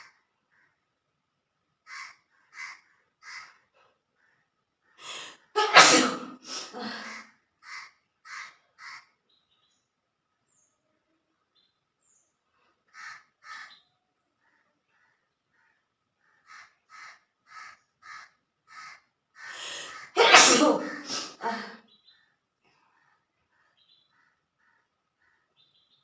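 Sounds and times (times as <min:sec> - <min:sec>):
drawn-in breath: 0:05.0 - 0:05.5, 0:19.4 - 0:20.1
woman sniffing: 0:05.0 - 0:07.2, 0:19.5 - 0:21.7
woman sneezing: 0:05.1 - 0:07.2, 0:19.7 - 0:21.8.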